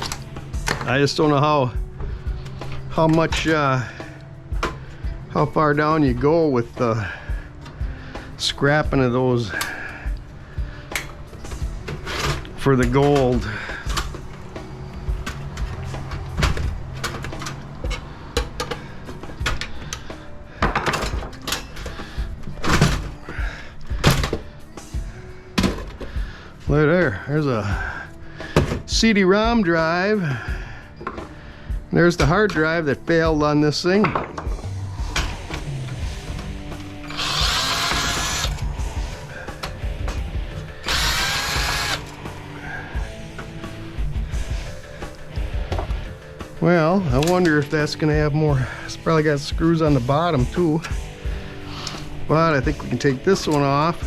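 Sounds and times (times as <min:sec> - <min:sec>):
power drill running: 0:37.0 - 0:38.6, 0:40.8 - 0:42.2.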